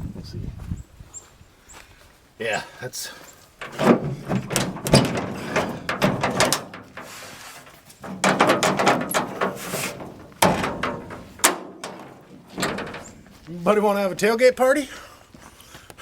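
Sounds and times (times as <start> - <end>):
metallic clanks and ratchety rattles: 3.6 - 13.5.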